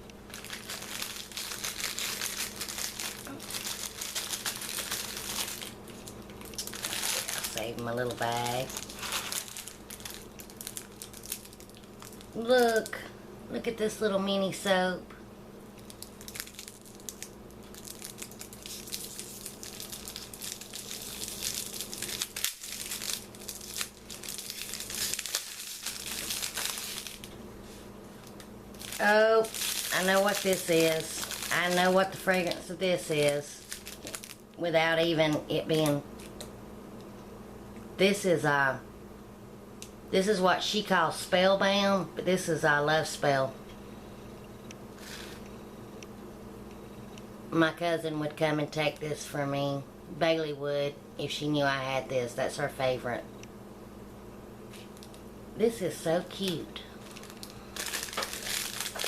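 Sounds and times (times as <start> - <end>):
plastic bag crinkling: 0.3 - 13.0, 15.8 - 36.5, 54.7 - 55.2, 56.2 - 59.0.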